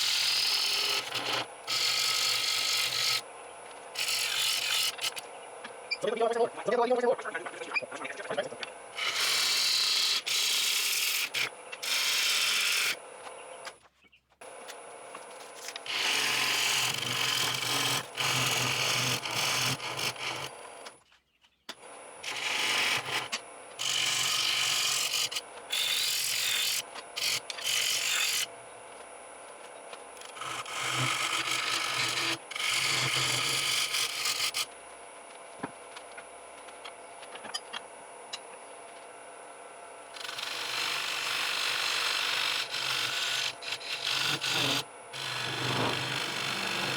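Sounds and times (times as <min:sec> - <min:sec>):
gouge cutting wood on a lathe: 0:00.0 - 0:03.2, 0:04.0 - 0:05.2, 0:09.0 - 0:13.0, 0:15.7 - 0:20.9, 0:22.2 - 0:28.5, 0:30.2 - 0:34.7, 0:40.1 - 0:46.9
lathe humming: 0:00.0 - 0:05.6, 0:08.9 - 0:13.2, 0:15.1 - 0:21.0, 0:22.2 - 0:28.5, 0:30.2 - 0:34.7, 0:40.1 - 0:46.9.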